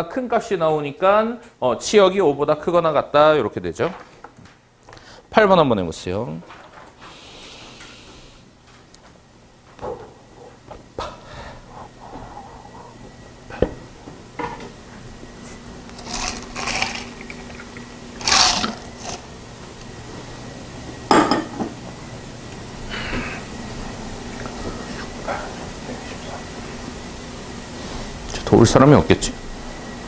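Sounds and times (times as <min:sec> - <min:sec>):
objects being handled: 0:16.0 - 0:19.9.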